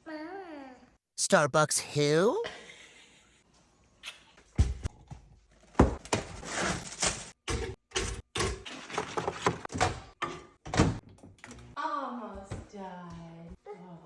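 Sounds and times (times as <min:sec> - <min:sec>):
kitchen knocks and thuds: 0:04.6 - 0:06.4, 0:07.4 - 0:11.4, 0:12.3 - 0:13.6.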